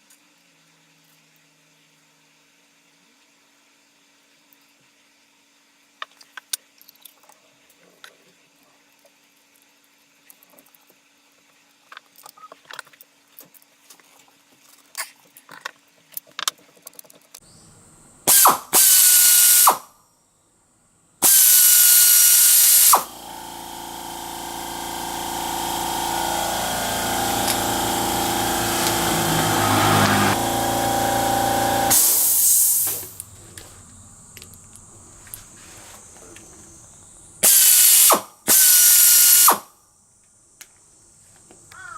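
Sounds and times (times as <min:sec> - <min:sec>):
air ratchet whining: 0:18.3 - 0:19.8, 0:21.2 - 0:33.2, 0:37.4 - 0:39.6.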